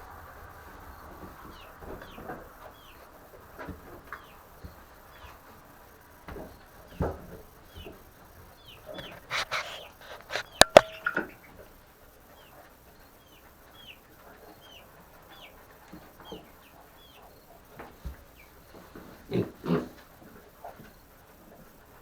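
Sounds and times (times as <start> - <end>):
baby chicks peeping: 0.8 - 11.7, 12.3 - 19.7
rough short sounds: 9.2 - 11.0.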